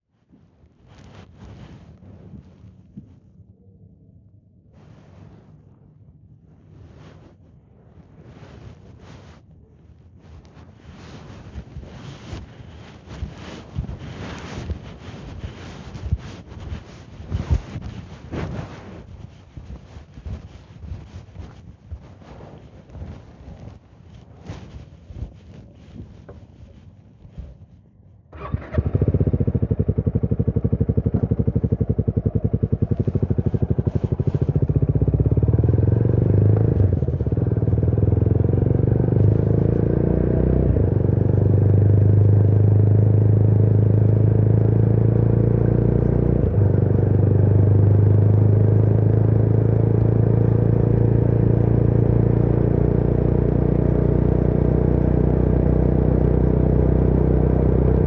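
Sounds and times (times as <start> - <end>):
motorcycle engine running: 28.3 - 58.0.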